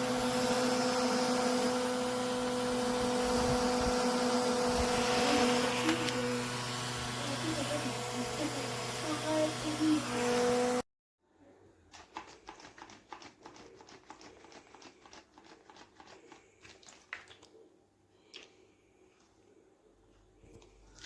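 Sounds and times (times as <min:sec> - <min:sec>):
voice: 0:05.1 - 0:06.4, 0:07.2 - 0:10.6.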